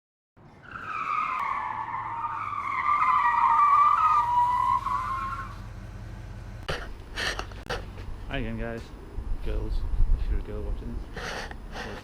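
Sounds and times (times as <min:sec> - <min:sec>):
low engine hum: 0:02.6 - 0:10.2.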